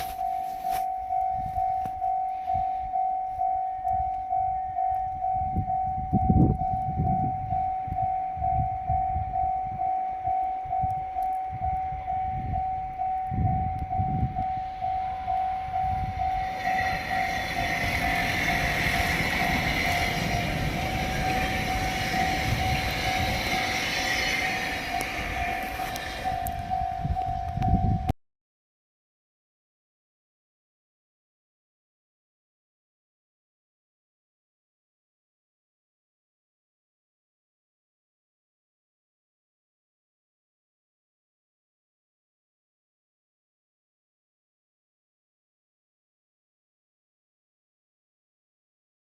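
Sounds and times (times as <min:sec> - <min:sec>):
level-crossing warning bell: 0:00.0 - 0:28.1
passing train rushing: 0:13.3 - 0:28.1.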